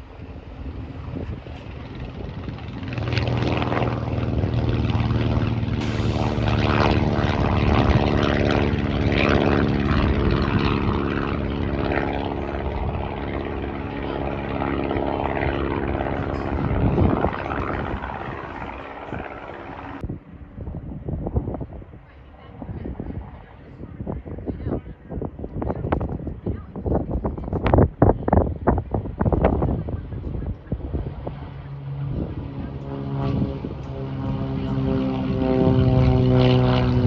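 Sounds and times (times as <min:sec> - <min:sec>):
propeller airplane engine drone: 0:00.0 - 0:37.0.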